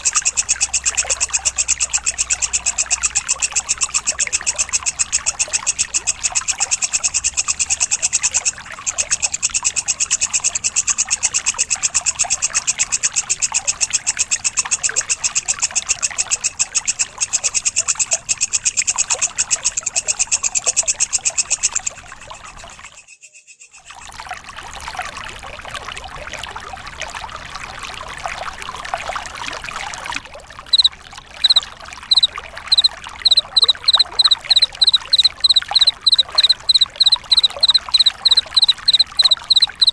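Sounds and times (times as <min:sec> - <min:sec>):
high repeated insect chirps: 0:00.0 - 0:23.8, 0:30.7 - 0:39.9
fast pulsing insect buzz: 0:30.7 - 0:39.9
soft insect rasping: 0:30.7 - 0:39.9.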